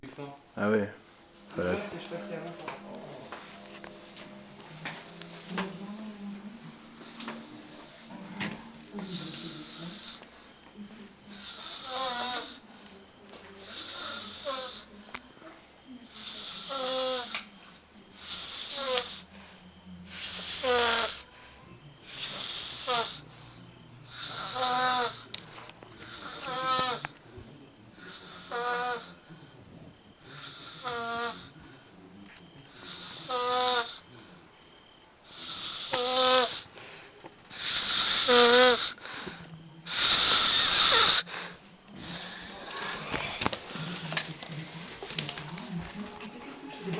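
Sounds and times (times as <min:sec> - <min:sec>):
man snoring: 0:09.0 - 0:10.2, 0:11.3 - 0:12.6, 0:13.6 - 0:14.9, 0:16.1 - 0:17.4, 0:18.2 - 0:19.3, 0:20.1 - 0:21.3, 0:22.0 - 0:23.2, 0:24.0 - 0:25.3, 0:26.0 - 0:27.1, 0:28.0 - 0:29.2, 0:30.2 - 0:31.6, 0:32.7 - 0:34.1, 0:35.2 - 0:36.7, 0:37.5 - 0:39.1, 0:39.9 - 0:41.3.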